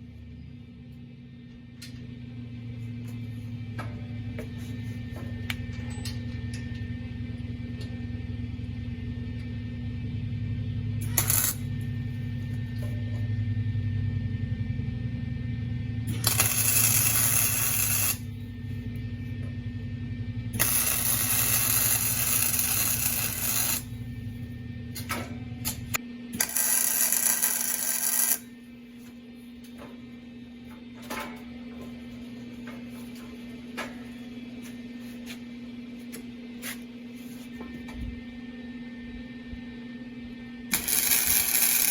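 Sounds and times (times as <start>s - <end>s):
steady electrical hum: 0.0s - 41.9s
welding crackling hiss: 11.0s - 11.7s, 16.1s - 18.3s, 20.6s - 23.9s, 26.4s - 28.4s, 40.7s - 41.9s.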